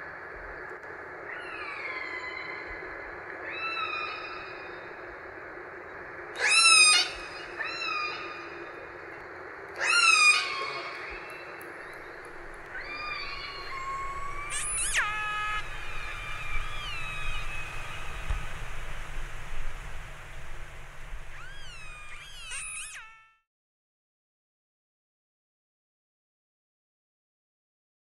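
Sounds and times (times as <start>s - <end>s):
steady hiss: 0.0s - 23.0s
gliding whistles: 9.8s - 23.4s
low water rumble: 10.9s - 22.8s
killer whale calls: 12.2s - 18.8s, 21.3s - 23.4s.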